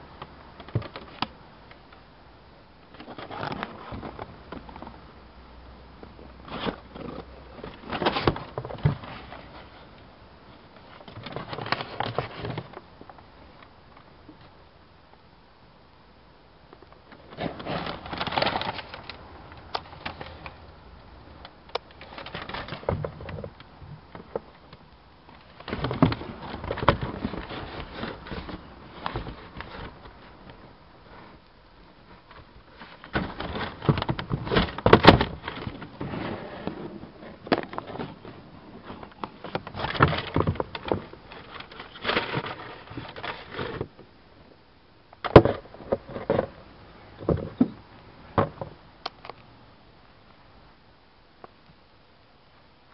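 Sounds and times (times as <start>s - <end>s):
box and packaging rustling: 3.0s - 5.0s, 6.1s - 9.9s, 10.8s - 13.2s, 17.2s - 20.6s, 21.8s - 23.6s, 25.3s - 44.0s.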